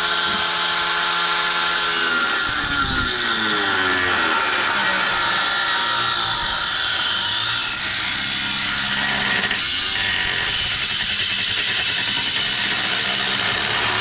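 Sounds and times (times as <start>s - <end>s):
power tool grinding through steel: 0.0s - 14.0s.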